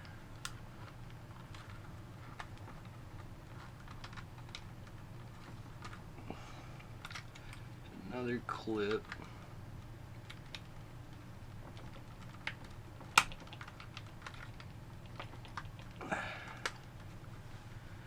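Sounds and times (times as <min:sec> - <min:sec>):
sharp plastic snap: 0:13.1 - 0:13.6.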